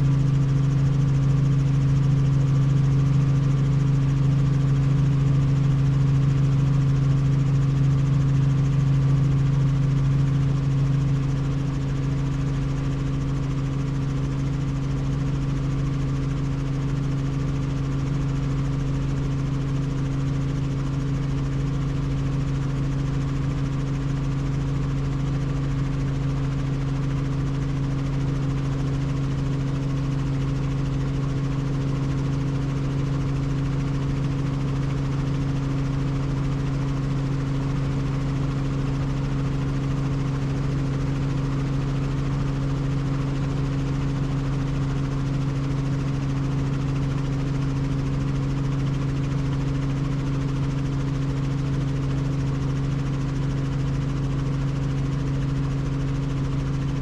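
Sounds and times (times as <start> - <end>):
helicopter drone: 0.0 - 57.0.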